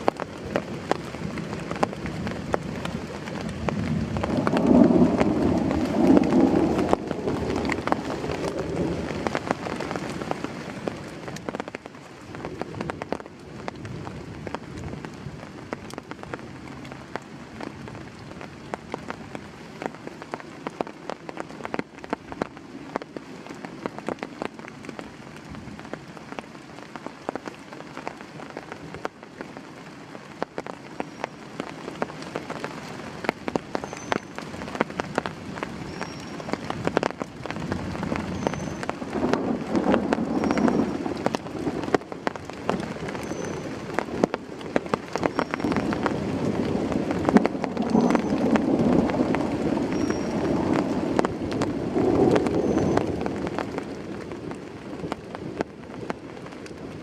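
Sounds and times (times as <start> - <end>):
heavy rain falling: 0.0 - 57.0
low rumble: 3.6 - 9.7.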